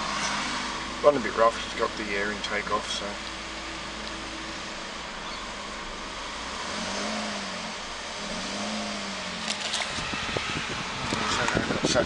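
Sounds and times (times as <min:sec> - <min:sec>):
car engine running rough: 0:00.0 - 0:12.0
engine revving: 0:00.0 - 0:12.0.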